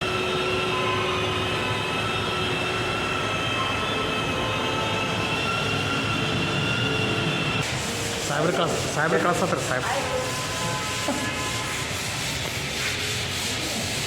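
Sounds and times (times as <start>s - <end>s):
electric sander on wall: 7.6s - 14.0s.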